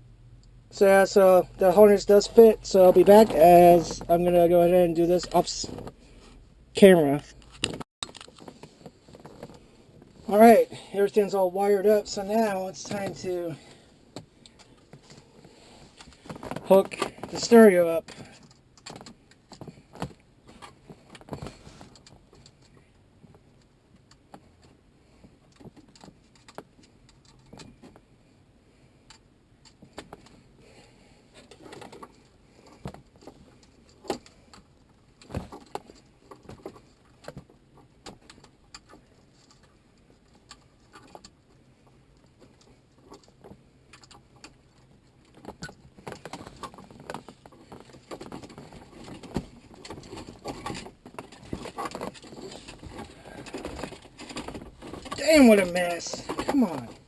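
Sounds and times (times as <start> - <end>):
clicks and rattles of connectors: 7.4 - 9.6, 25.4 - 28.0.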